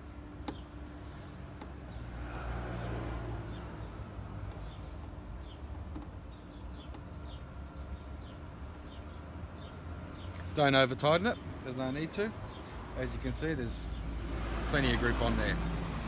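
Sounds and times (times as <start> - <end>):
vehicle passing: 1.9 - 5.6, 12.1 - 16.0
bird chirping: 2.8 - 14.2.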